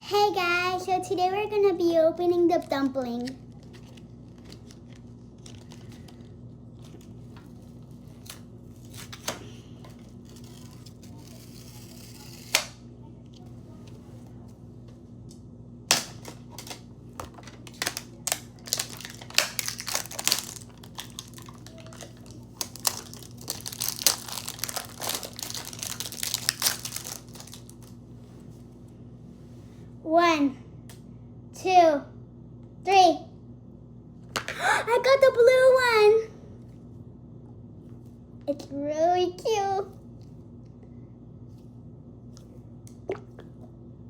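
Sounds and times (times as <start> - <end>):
plastic packaging crinkling and tearing: 2.4 - 12.8, 15.9 - 28.0.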